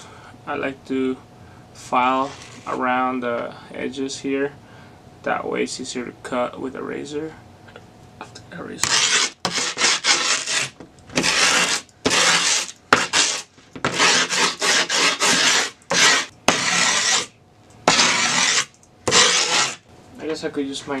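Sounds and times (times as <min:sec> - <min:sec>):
file rasping on grip tape: 0:08.8 - 0:17.3, 0:17.9 - 0:19.8.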